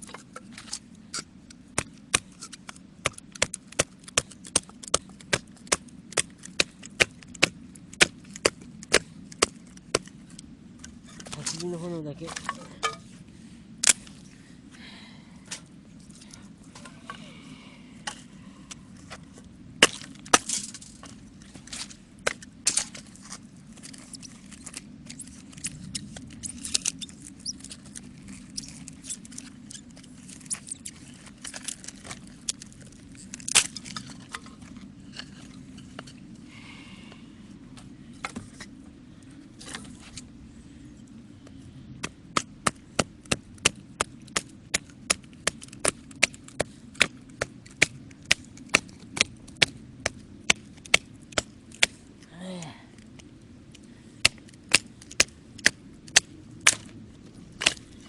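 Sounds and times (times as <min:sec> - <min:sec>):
wood fire crackling: 0:40.7 - 0:58.0.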